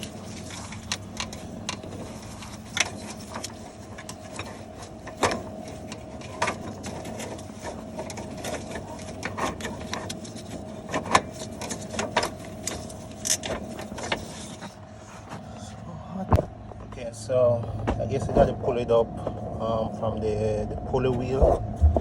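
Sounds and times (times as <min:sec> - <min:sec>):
steady hum: 0:00.0 - 0:22.0.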